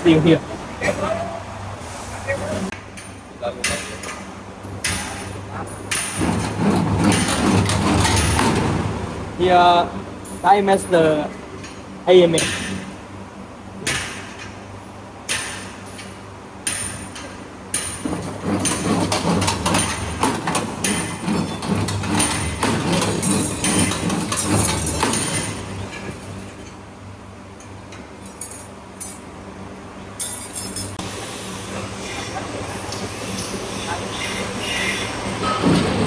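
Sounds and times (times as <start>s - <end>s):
steady motor hum: 0.0s - 36.0s
metal clanking and rattling: 4.9s - 9.0s, 17.9s - 26.7s
sharp metallic knocks: 12.3s - 13.0s.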